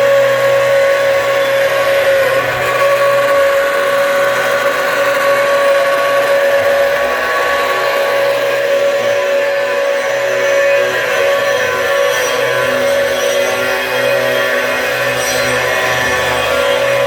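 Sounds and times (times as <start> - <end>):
spindle motor high whine: 0.0 - 17.0.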